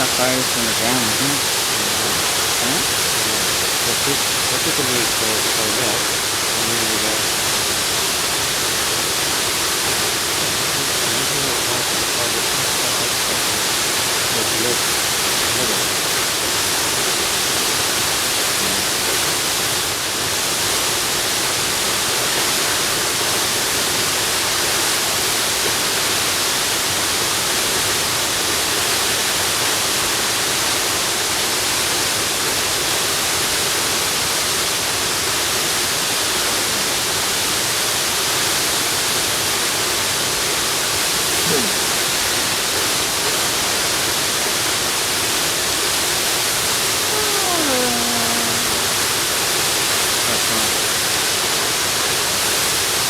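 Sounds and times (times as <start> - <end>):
waterfall rushing: 0.0 - 28.4.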